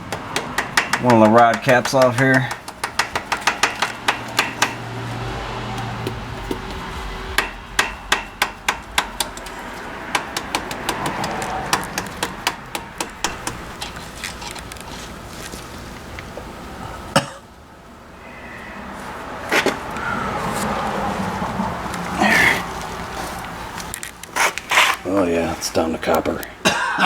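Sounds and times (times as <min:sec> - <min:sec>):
small hammer tapping metal: 0:00.1 - 0:04.8, 0:10.1 - 0:14.0.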